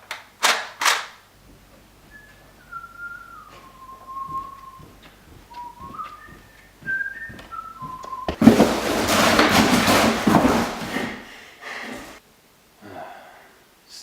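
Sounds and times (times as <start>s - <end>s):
person whistling a tune: 2.1s - 8.4s.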